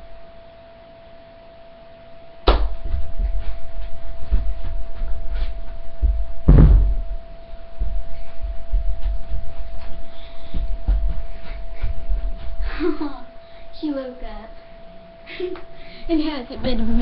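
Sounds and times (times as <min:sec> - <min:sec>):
faint electronic whine: 0:00.0 - 0:17.0
dull low thumps and knocks: 0:02.5 - 0:12.6.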